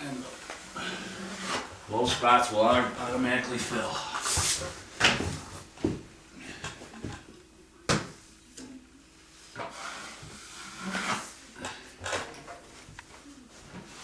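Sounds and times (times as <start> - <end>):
drywall knife scraping compound: 1.0 - 1.7, 9.6 - 11.9.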